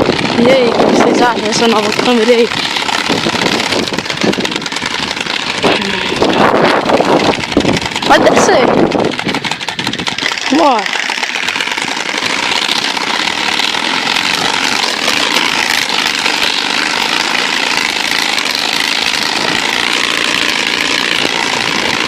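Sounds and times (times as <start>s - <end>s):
rush of wind and road noise: 0.0s - 10.6s
motorcycle engine running: 0.0s - 22.0s.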